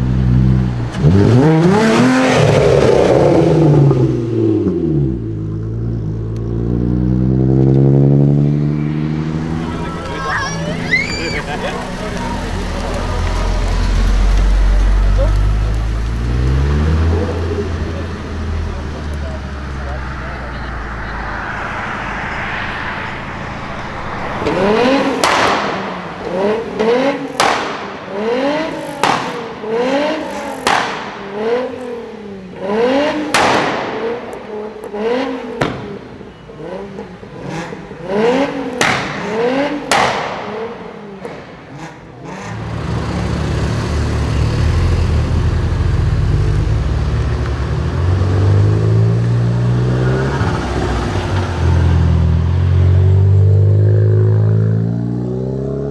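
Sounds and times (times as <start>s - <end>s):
car engine revving in blips: 0.0s - 55.9s
exhaust pops and crackles: 11.1s - 19.4s, 25.2s - 28.2s, 28.8s - 29.6s, 30.2s - 31.9s, 33.3s - 35.0s, 38.7s - 40.6s.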